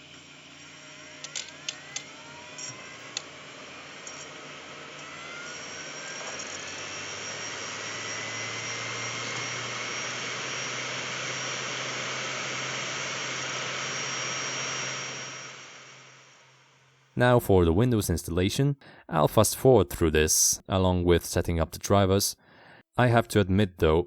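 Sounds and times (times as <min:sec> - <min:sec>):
cd drive spinning up whine: 0:00.0 - 0:17.1.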